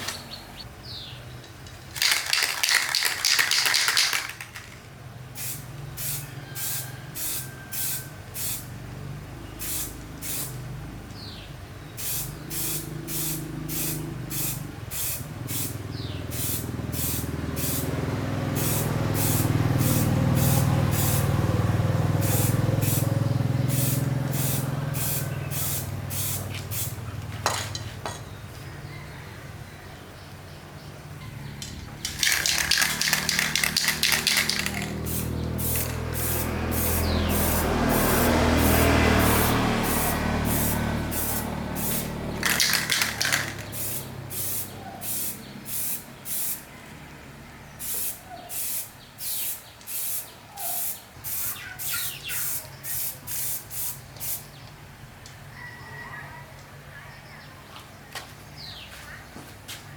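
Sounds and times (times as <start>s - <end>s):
short spray puffs: 1.5s - 8.7s, 9.6s - 10.6s, 12.0s - 17.9s, 18.5s - 21.4s, 22.2s - 27.0s, 31.6s - 46.6s, 47.8s - 54.6s
spray hiss: 5.4s - 8.7s, 9.6s - 10.6s, 12.0s - 17.9s, 18.5s - 21.3s, 23.7s - 26.9s, 32.1s - 46.6s, 47.8s - 54.5s.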